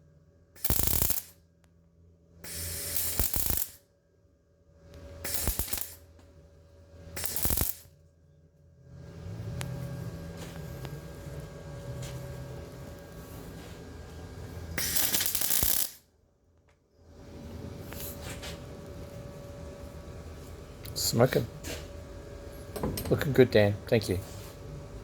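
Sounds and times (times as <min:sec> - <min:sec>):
welder crackling: 0:00.6 - 0:01.4, 0:02.4 - 0:03.8, 0:05.0 - 0:06.2, 0:07.1 - 0:07.9, 0:14.4 - 0:16.0
welder sputtering: 0:00.6 - 0:01.4, 0:02.4 - 0:03.8, 0:05.2 - 0:06.1, 0:07.1 - 0:07.9, 0:14.7 - 0:16.0.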